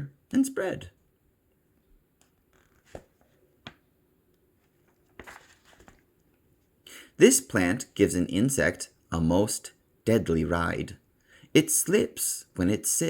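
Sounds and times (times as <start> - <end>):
book page turning: 2.5 - 3.9, 4.6 - 6.2.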